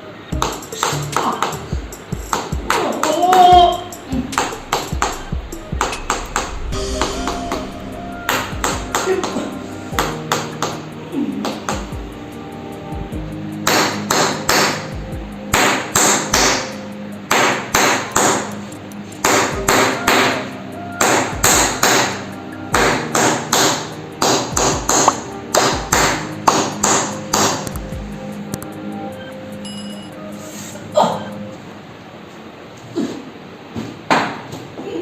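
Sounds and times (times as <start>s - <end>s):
background music: 0.0s - 32.6s
massage hammer tapping: 22.8s - 28.0s.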